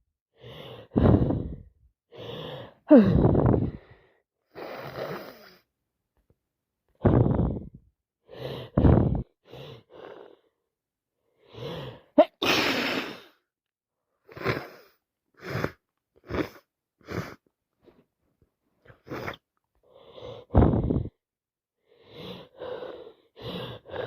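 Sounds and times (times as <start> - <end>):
woman breathing: 0.4 - 5.6, 7.0 - 10.5, 21.8 - 24.0
woman sneezing: 12.2 - 13.2.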